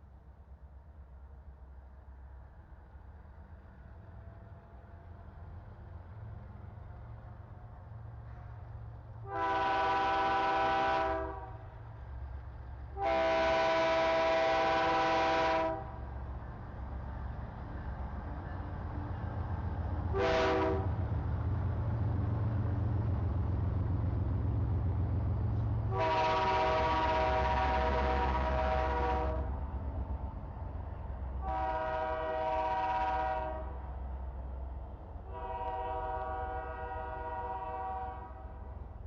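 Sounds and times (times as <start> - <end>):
locomotive engine rumble: 1.7 - 39.0
locomotive air horn: 9.2 - 11.6, 13.0 - 16.0, 20.1 - 20.9, 25.9 - 29.5, 31.4 - 33.8, 35.3 - 38.7.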